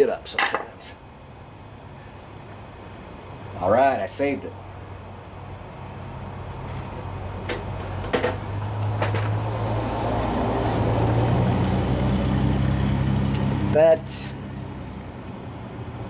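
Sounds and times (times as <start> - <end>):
engine humming: 4.6 - 16.0.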